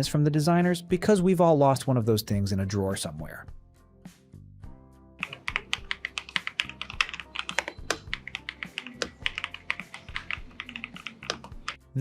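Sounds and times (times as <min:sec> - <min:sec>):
fast typing on mechanical keyboard: 0:05.2 - 0:11.8.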